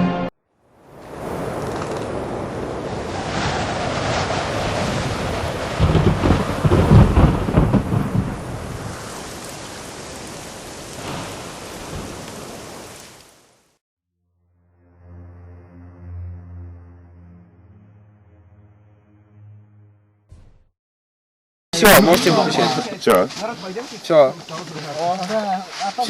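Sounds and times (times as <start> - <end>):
rain falling: 1.0 - 13.8, 21.8 - 26.0
low roll of thunder: 1.1 - 12.8.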